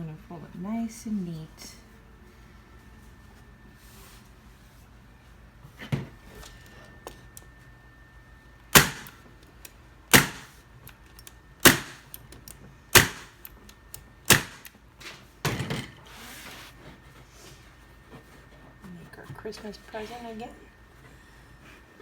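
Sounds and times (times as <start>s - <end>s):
staple gun firing: 8.7s - 9.2s, 10.1s - 10.5s, 11.6s - 12.2s, 12.9s - 13.4s, 14.3s - 14.7s.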